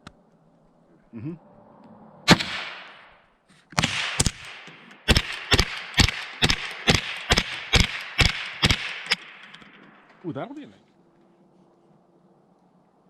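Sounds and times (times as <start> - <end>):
rifle shots with echo: 2.3 - 3.1, 3.8 - 10.2.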